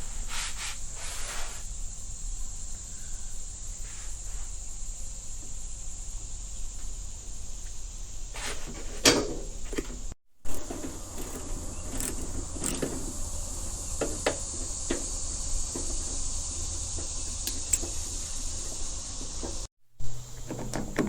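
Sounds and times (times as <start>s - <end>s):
hand tools clicking and knocking: 16.9s - 21.0s.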